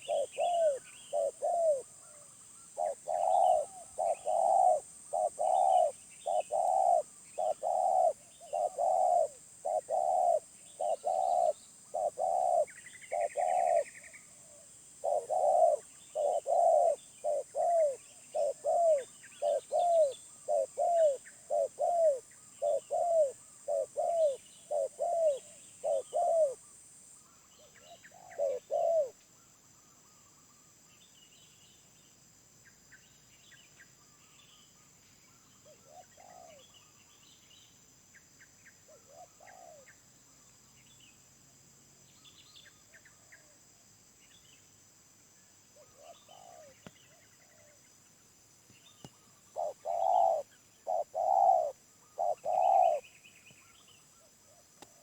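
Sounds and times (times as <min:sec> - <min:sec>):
dove cooing: 0:00.0 - 0:26.7, 0:27.6 - 0:29.2, 0:35.7 - 0:36.7, 0:38.9 - 0:39.9, 0:45.8 - 0:47.8, 0:49.5 - 0:53.1
small birds chirping: 0:00.0 - 0:41.4, 0:45.4 - 0:55.0
high insect hiss: 0:00.0 - 0:55.0.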